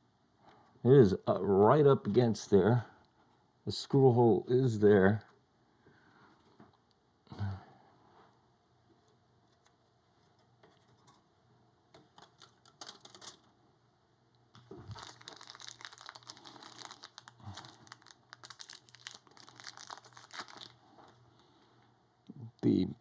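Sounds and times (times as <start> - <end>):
plastic packaging crinkling: 12.0 - 13.5, 14.5 - 21.2.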